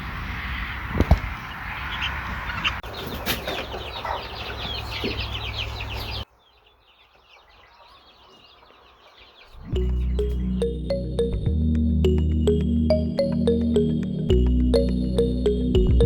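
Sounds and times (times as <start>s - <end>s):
chicks peeping: 0.1s - 10.8s.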